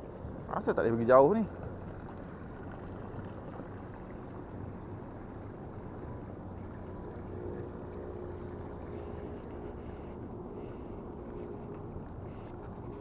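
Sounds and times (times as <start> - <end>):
low engine drone: 1.6 - 13.0
higher steady hum: 5.7 - 13.0.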